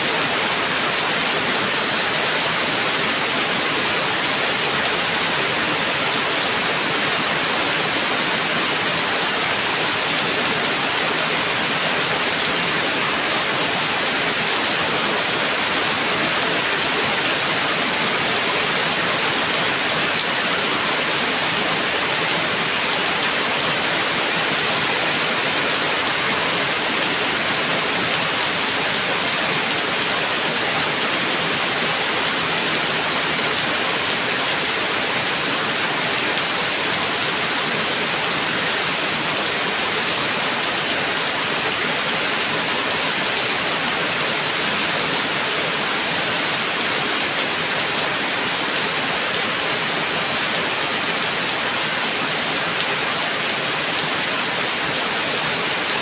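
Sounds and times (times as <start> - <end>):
heavy rain pattering: 0.0 - 56.0.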